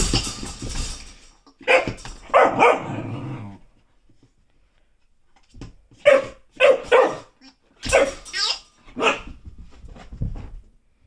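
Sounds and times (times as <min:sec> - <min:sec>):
dog barking: 0:01.6 - 0:03.0, 0:06.0 - 0:08.2, 0:09.0 - 0:09.3
dog growling: 0:02.8 - 0:03.6.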